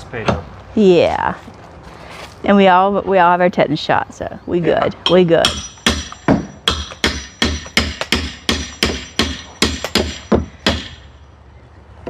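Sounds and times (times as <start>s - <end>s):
hammer striking deck boards: 5.0s - 11.1s.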